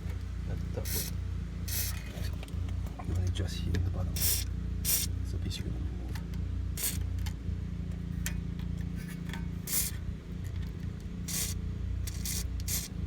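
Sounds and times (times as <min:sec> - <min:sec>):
aerosol can spraying: 0:00.8 - 0:02.1, 0:04.2 - 0:05.1, 0:06.8 - 0:07.1, 0:09.6 - 0:10.0, 0:11.3 - 0:13.0.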